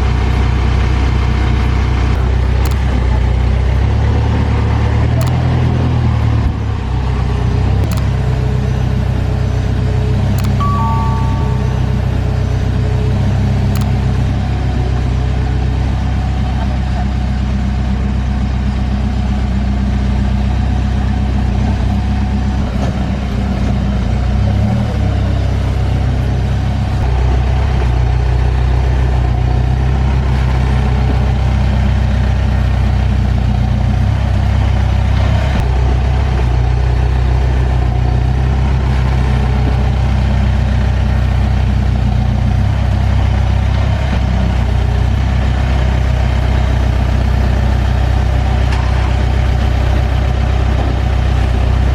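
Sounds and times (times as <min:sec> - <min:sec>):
diesel engine running: 0:12.0 - 0:51.9.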